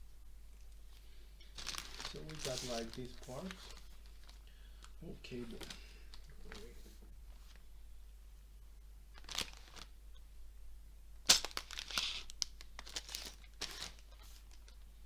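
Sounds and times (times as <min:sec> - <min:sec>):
packaging crinkling and tearing: 0:01.4 - 0:06.8, 0:09.1 - 0:09.9, 0:11.2 - 0:14.9.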